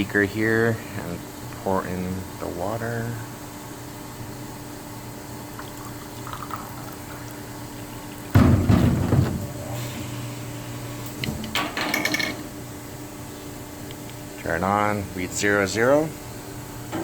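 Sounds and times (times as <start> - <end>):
steady hum: 0.0 - 17.0
water pouring into beaker: 5.6 - 8.3.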